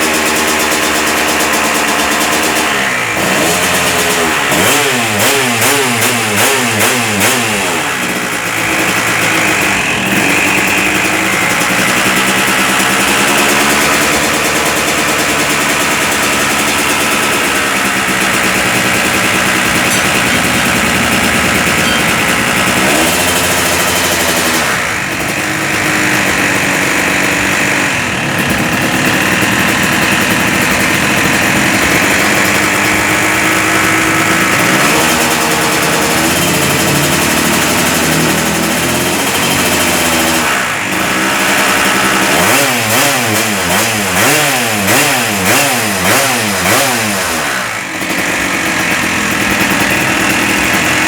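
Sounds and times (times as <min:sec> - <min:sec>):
two-stroke motorcycle engine revving: 0:00.0 - 0:51.0.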